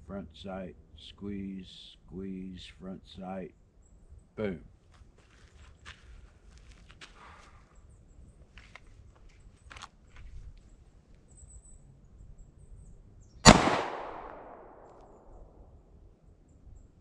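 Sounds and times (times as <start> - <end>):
pistol shot echoing: 13.4 - 15.5.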